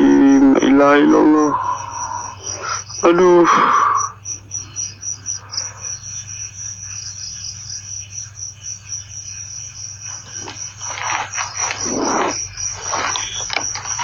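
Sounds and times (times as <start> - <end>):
constant low hum: 0.0 - 14.0
crickets trilling: 0.0 - 14.0
irregular rustling: 10.1 - 14.0.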